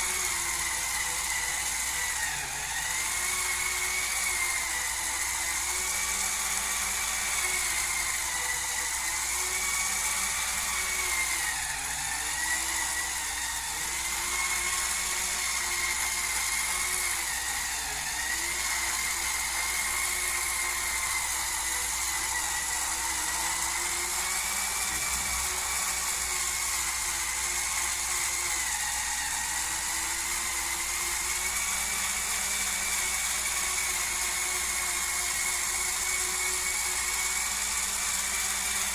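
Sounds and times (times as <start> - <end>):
electric scrubber motor whining: 0.0 - 38.9.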